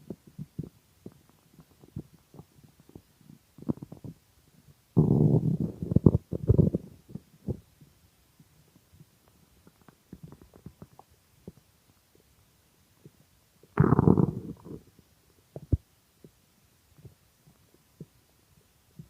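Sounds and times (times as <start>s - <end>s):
stomach growling: 0.1s - 4.2s, 5.0s - 7.7s, 9.6s - 11.6s, 13.8s - 15.8s.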